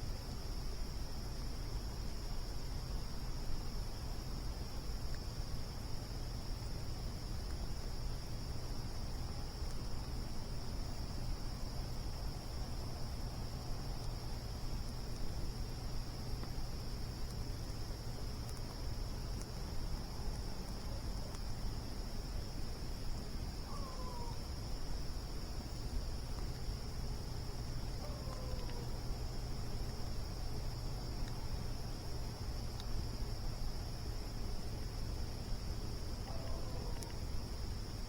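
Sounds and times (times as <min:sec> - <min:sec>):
crickets chirping: 0:00.0 - 0:38.0
faint ticks: 0:09.0 - 0:10.1, 0:13.4 - 0:21.8, 0:25.6 - 0:35.1, 0:36.2 - 0:38.0.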